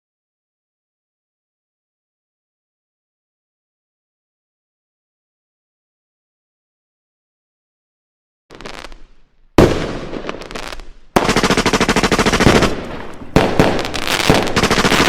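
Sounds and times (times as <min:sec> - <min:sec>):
rapid sharp cracks and bangs: 0:11.2 - 0:15.0.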